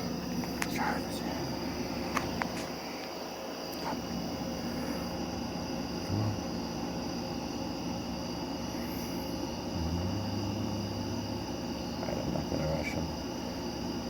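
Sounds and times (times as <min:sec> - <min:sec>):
crickets chirping: 0:00.0 - 0:14.0
low hum: 0:08.9 - 0:13.2.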